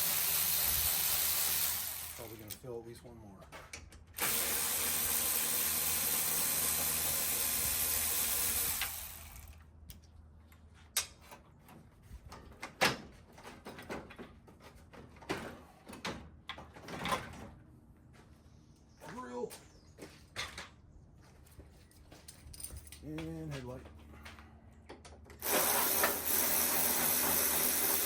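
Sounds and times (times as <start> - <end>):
power ratchet running: 0.0 - 2.4, 4.2 - 9.6, 25.4 - 28.0.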